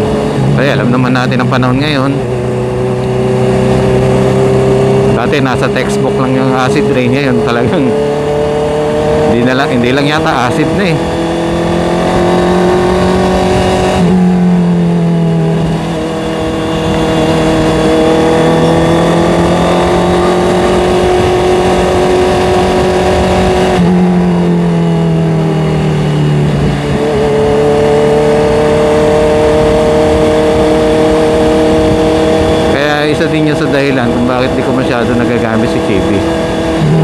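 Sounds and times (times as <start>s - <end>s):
motorcycle engine accelerating: 0.0s - 37.0s.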